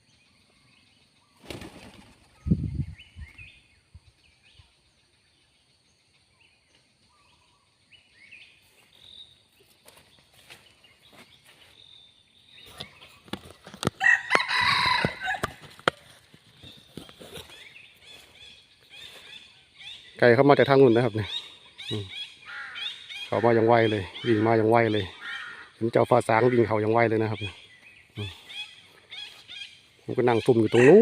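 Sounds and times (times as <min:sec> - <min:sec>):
faint bird chirps: 0:00.0 - 0:14.2, 0:16.6 - 0:31.0
sharp knocks and rustles: 0:12.7 - 0:14.0
rooster crowing loudly: 0:14.0 - 0:15.6, 0:30.7 - 0:31.0.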